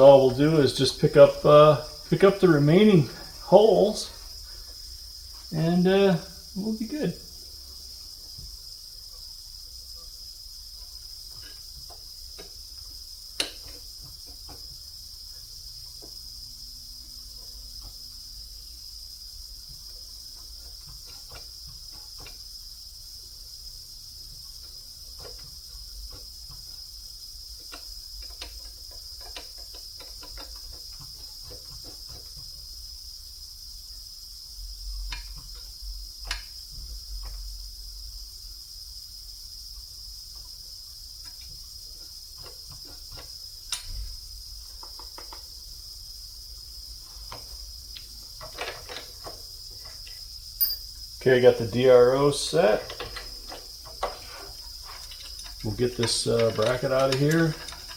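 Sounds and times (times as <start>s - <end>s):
tools clicking and knocking: 13.4s - 14.6s, 27.6s - 32.4s, 42.4s - 44.1s, 44.7s - 45.6s, 47.2s - 51.0s, 52.1s - 57.9s.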